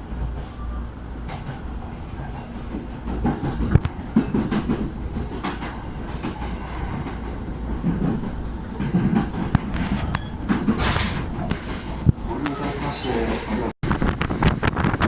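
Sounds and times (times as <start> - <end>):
wheels clicking over rails: 0.0 - 13.0
train rumbling: 0.0 - 15.0
short hiss: 10.8 - 12.1.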